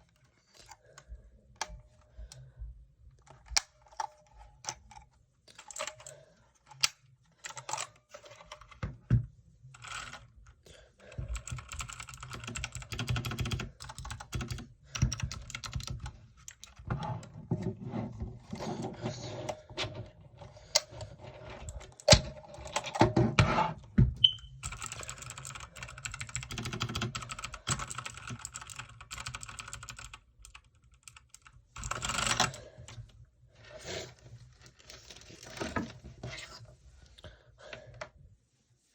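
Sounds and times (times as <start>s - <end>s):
mechanical keyboard typing: 11.3s - 16.8s, 24.2s - 32.6s.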